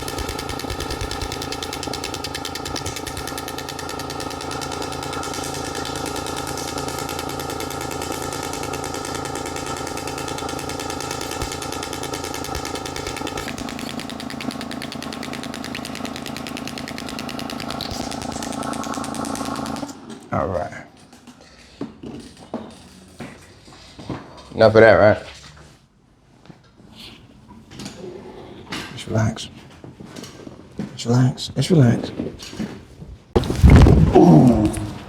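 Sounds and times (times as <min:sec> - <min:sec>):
rapid machine pulses rattling: 0:00.0 - 0:20.2, 0:33.4 - 0:35.0.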